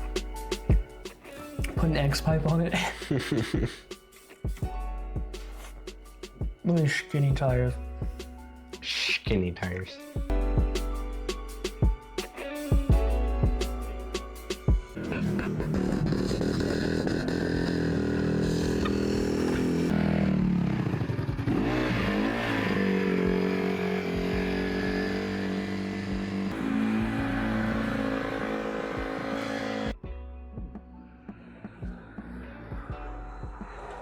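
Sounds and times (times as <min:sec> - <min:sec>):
engine running and revving: 0:15.0 - 0:30.0.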